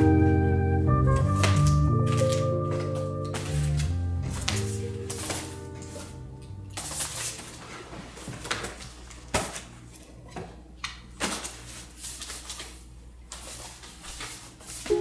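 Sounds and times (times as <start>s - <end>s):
rustling: 1.0s - 9.7s.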